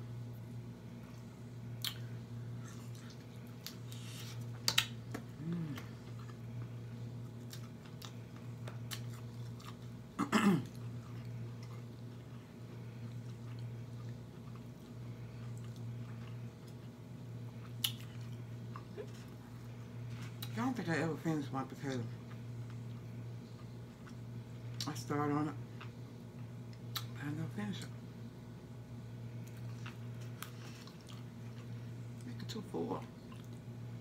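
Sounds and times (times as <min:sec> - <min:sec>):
low hum: 0:00.0 - 0:34.0
person chewing and smacking: 0:01.0 - 0:20.6, 0:22.2 - 0:24.9, 0:29.3 - 0:32.3, 0:33.1 - 0:33.8.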